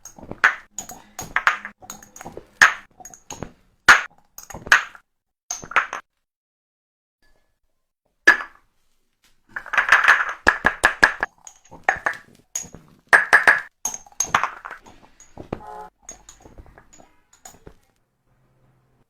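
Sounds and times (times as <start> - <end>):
glass jars clinking: 0.0 - 4.8, 9.6 - 17.9.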